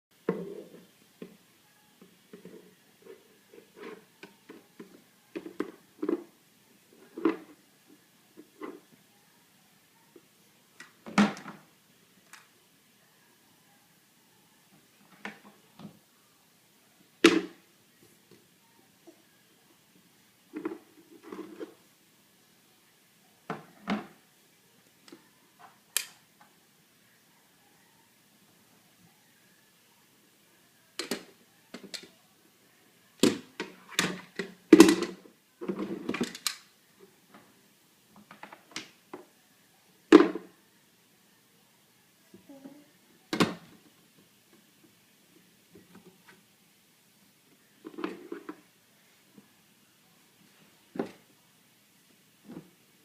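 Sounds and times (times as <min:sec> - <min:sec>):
objects knocking and clunking: 0:00.2 - 0:01.4.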